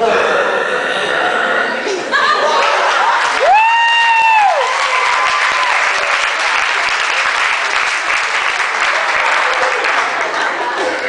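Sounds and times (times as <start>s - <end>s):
audience applauding: 2.5s - 11.0s.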